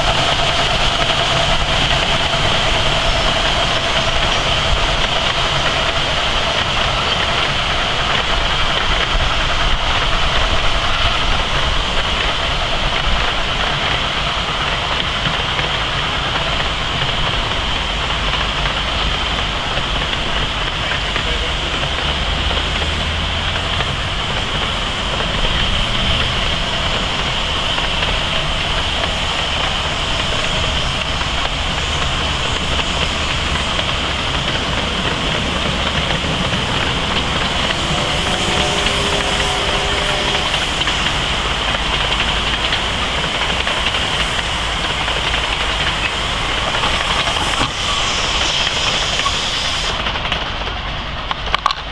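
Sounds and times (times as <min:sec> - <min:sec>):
steam hiss: 0:00.0 - 0:51.3
train wheels rolling on rails: 0:00.0 - 0:51.9.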